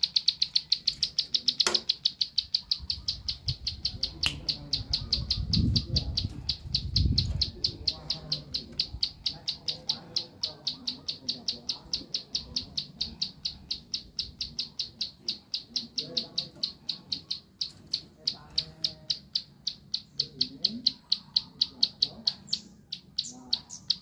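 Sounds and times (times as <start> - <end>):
songbird calling high notes: 0.0 - 24.0.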